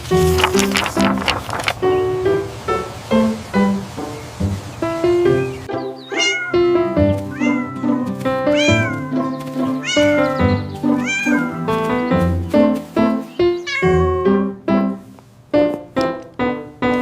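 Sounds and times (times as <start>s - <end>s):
background music with piano: 0.0s - 17.0s
cat meowing: 6.0s - 11.8s, 13.5s - 14.1s.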